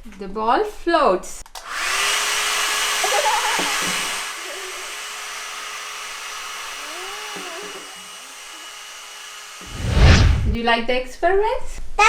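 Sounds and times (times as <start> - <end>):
electric air blower whooshing: 1.6 - 10.6
faint motor hum: 1.6 - 10.6.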